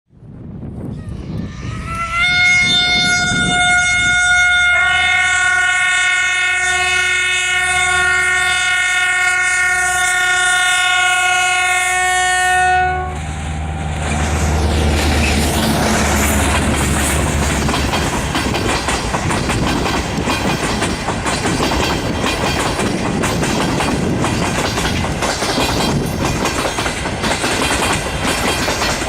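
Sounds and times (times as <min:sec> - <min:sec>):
rumble of passing train: 0:00.2 - 0:29.0
locomotive air horn blast: 0:01.3 - 0:15.0.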